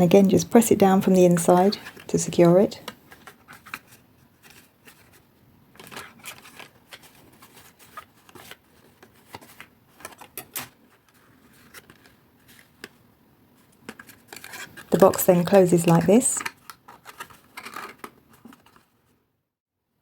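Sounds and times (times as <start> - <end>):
cardstock rustling and tapping: 5.8 - 13.0.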